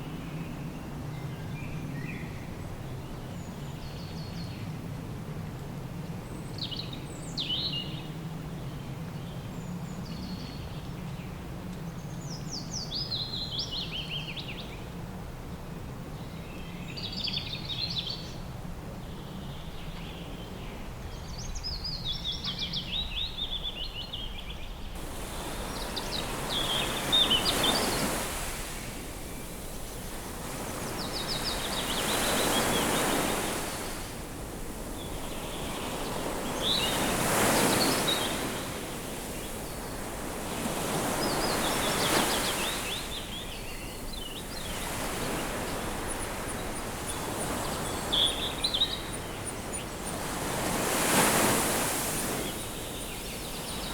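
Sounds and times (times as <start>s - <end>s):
birds chirping: 25.0s - 53.9s
waves breaking on shore: 25.0s - 53.9s.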